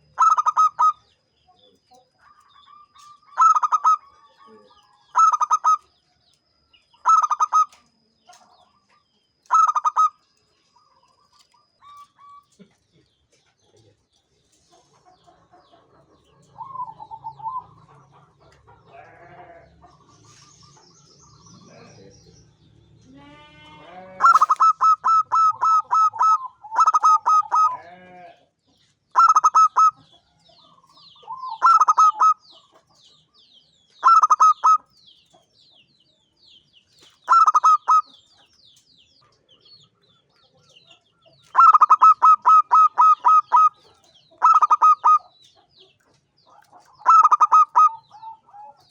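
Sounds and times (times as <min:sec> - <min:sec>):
dove singing staccato notes: 0:00.0 - 0:06.0, 0:06.9 - 0:18.9, 0:24.2 - 0:27.8, 0:28.8 - 0:33.1, 0:33.9 - 0:35.4, 0:37.0 - 0:38.8, 0:40.9 - 0:48.9
faint high bird chirping: 0:00.0 - 0:18.0, 0:18.9 - 0:48.9.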